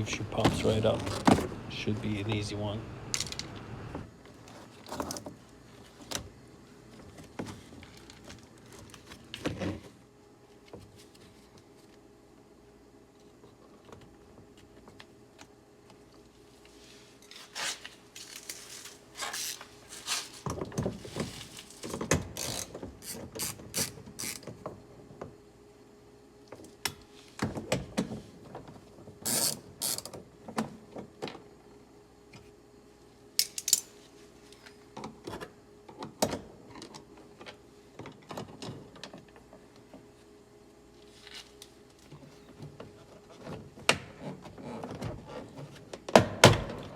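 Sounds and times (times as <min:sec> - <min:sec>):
faint steady hum: 0:00.0 - 0:46.9
hand tools clicking and scraping: 0:22.4 - 0:24.5.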